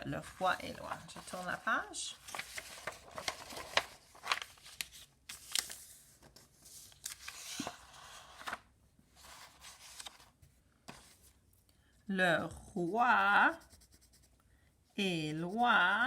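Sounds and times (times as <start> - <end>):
paper rustling and crinkling: 0.0 - 11.5.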